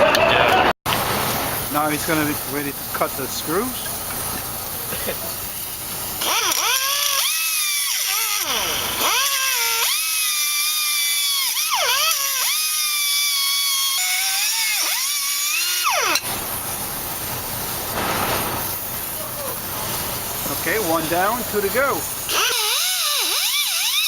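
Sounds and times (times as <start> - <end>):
power cutter motor whining: 6.2 - 16.3, 20.8 - 24.0.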